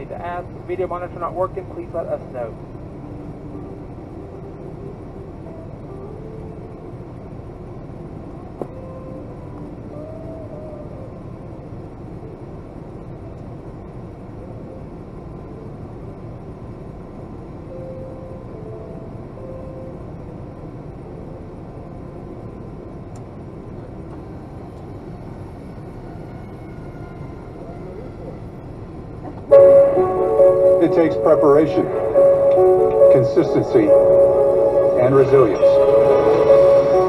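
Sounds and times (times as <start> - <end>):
aircraft cabin air-conditioning hiss: 0.0 - 37.0.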